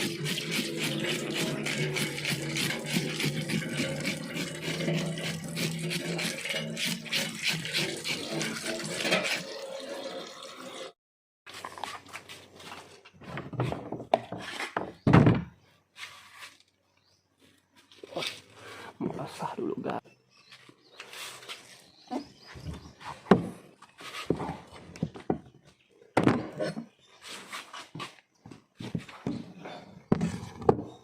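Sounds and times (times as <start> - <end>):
knocks and handling sounds: 11.5 - 16.8.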